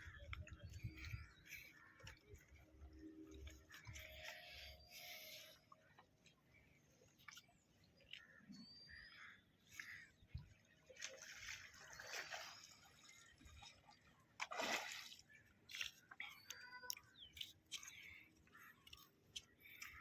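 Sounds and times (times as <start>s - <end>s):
sea water splashing: 9.8s - 16.4s.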